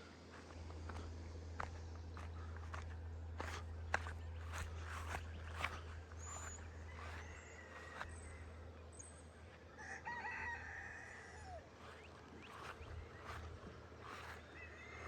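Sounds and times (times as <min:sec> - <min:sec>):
steady low hum: 0:00.0 - 0:09.8, 0:11.0 - 0:15.0
faint rooster crowing: 0:06.4 - 0:08.6, 0:09.7 - 0:15.0.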